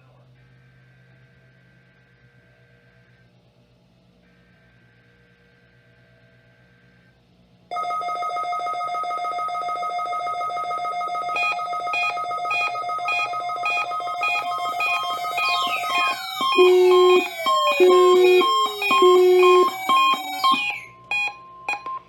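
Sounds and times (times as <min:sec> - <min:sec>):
falling alarm sweep: 0:07.7 - 0:21.8
steady buzzing alarm tone: 0:07.7 - 0:21.9
pulsing two-pitch beep: 0:07.8 - 0:22.0.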